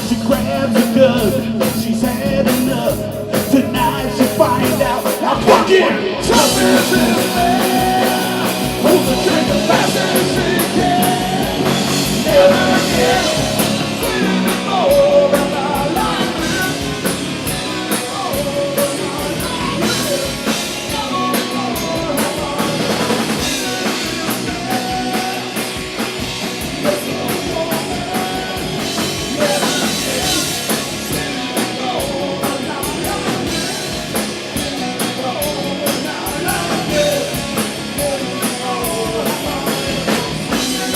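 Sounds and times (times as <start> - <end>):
bass guitar: 0.0 - 40.9
drum kit: 0.0 - 40.9
electric guitar: 0.0 - 40.9.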